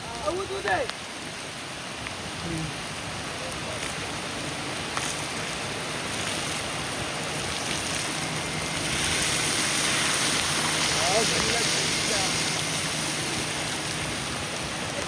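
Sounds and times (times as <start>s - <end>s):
heavy rain hissing: 0.0s - 15.0s.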